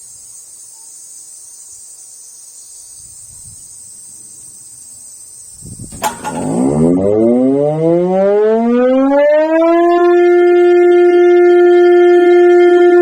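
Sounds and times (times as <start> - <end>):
high-pitched insect chorus: 0.0 - 6.5
electric motor siren winding up: 6.5 - 13.0.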